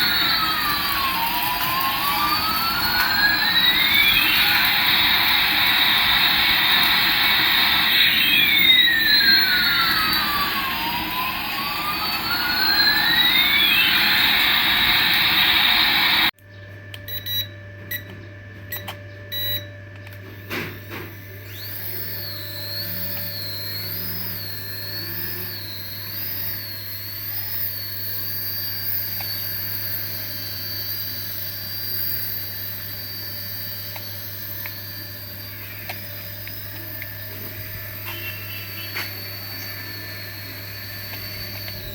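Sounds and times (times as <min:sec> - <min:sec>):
clicks: 0:00.0 - 0:16.3
low hum: 0:00.0 - 0:16.3
toy jet engine sound effect: 0:00.0 - 0:16.3, 0:20.5 - 0:41.9.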